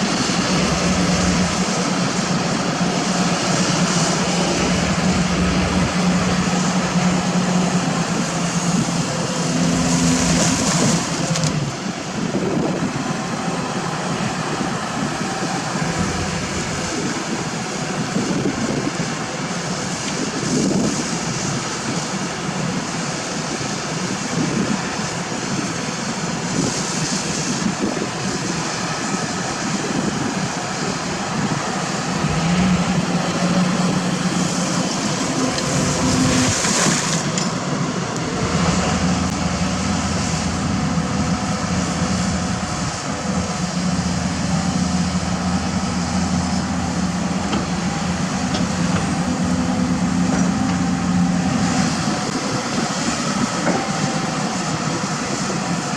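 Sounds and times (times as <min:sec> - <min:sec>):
low engine rumble: 0:00.0 - 0:21.6, 0:24.4 - 0:55.9
diesel engines of heavy machinery: 0:00.0 - 0:55.9.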